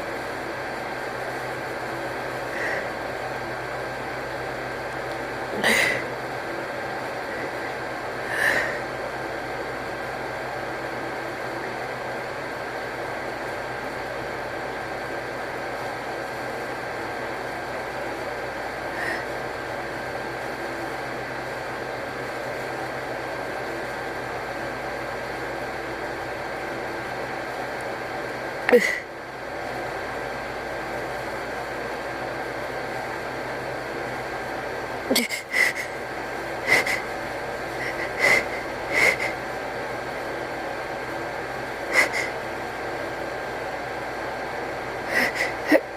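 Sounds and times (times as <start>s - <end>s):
sharp gasping inhales: 37.8s - 39.4s, 45.1s - 45.8s.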